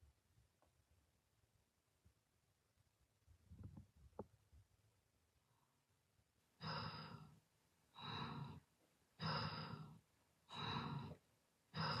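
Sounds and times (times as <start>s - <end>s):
person snoring: 6.6s - 7.4s, 8.0s - 8.6s, 9.2s - 12.0s.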